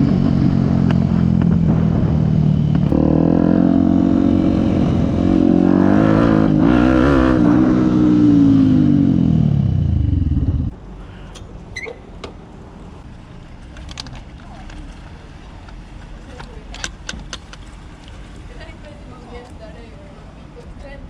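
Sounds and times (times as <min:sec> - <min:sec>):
motorcycle engine revving: 0:00.0 - 0:10.7.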